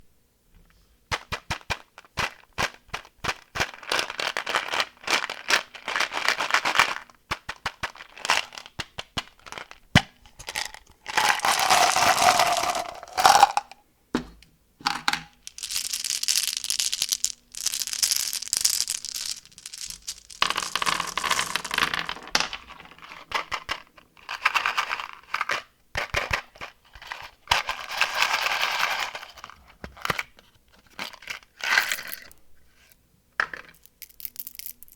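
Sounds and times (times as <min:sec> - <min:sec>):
plastic wrappers crinkling: 0:10.4 - 0:13.7, 0:15.3 - 0:23.7.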